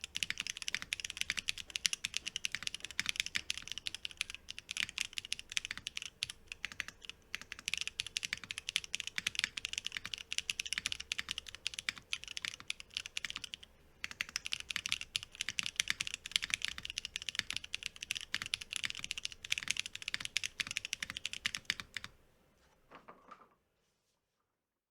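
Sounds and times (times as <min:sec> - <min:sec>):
fast typing on mechanical keyboard: 0:00.0 - 0:22.2.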